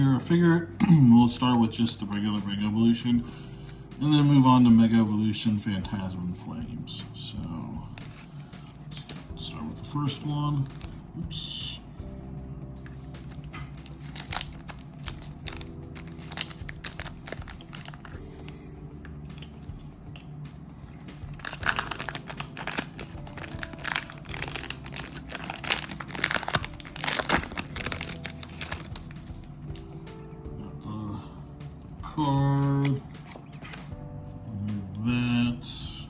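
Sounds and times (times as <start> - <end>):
soft background music: 0.0 - 36.0
foil wrapper crinkling and tearing: 13.2 - 18.5, 21.3 - 29.2.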